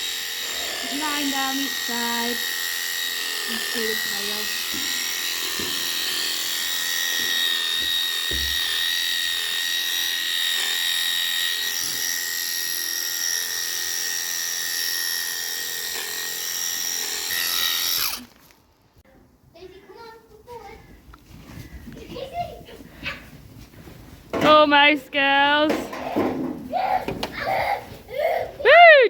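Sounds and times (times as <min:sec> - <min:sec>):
electric sheep clippers buzzing: 0:00.0 - 0:18.6.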